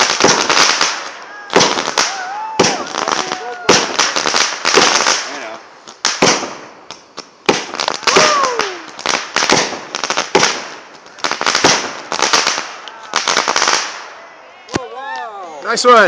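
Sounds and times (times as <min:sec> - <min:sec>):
firework bangs with crackling hiss: 0:00.0 - 0:14.2
falling firework whistle: 0:01.5 - 0:04.1, 0:07.9 - 0:09.0.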